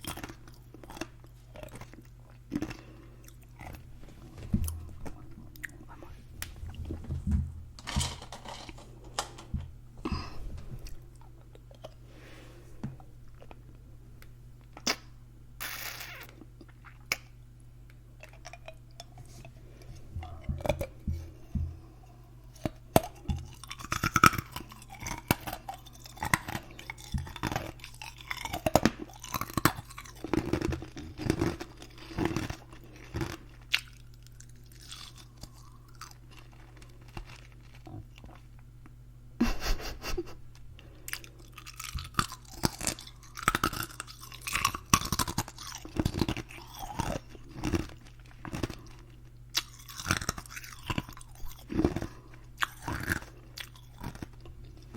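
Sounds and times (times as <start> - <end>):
ice cubes crunching: 23.1 - 38.4, 41.1 - 54.9.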